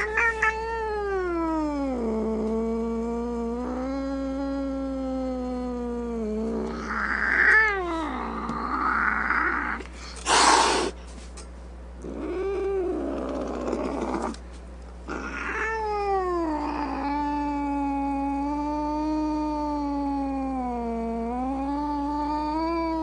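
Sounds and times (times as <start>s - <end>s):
cat hissing: 0.0s - 2.0s, 6.5s - 11.0s
cat yowling: 0.0s - 2.0s, 6.6s - 9.8s, 15.1s - 23.0s.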